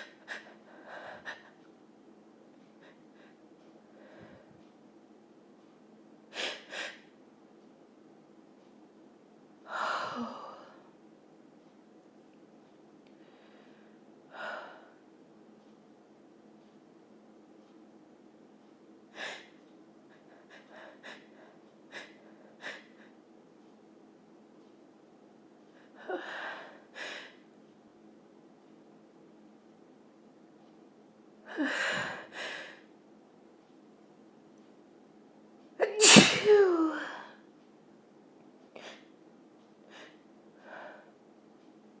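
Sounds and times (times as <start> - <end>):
woman breathing: 0.0 - 1.7, 2.6 - 4.7, 13.2 - 15.0, 19.1 - 23.2, 25.6 - 27.4, 31.5 - 32.9, 39.9 - 41.2
woman sneezing: 35.8 - 37.1.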